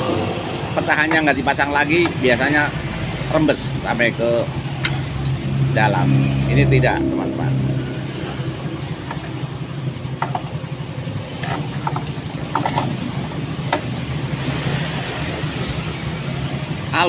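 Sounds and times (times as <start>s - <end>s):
motorcycle engine idling: 7.7s - 14.4s.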